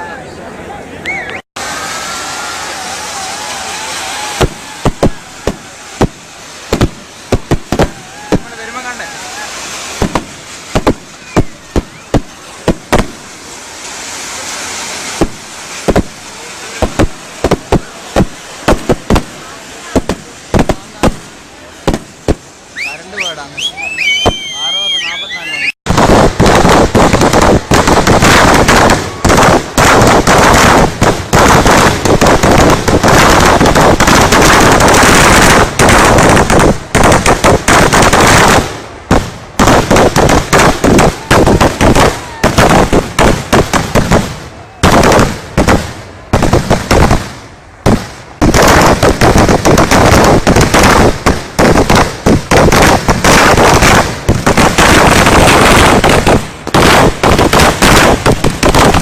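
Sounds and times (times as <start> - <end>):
rapid firecracker bangs: 1.6 - 23.4, 25.9 - 59.0.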